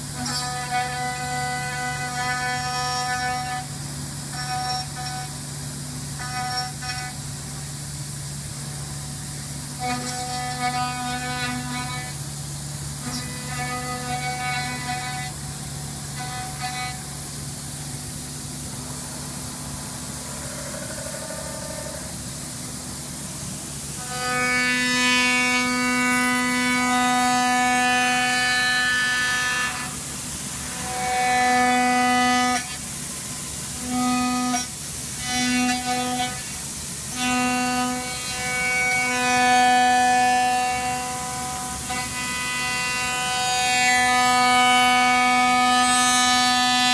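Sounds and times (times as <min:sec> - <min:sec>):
milling machine hum: 0:00.0 - 0:36.5
cutting tool squeal: 0:09.7 - 0:12.2, 0:13.0 - 0:23.2.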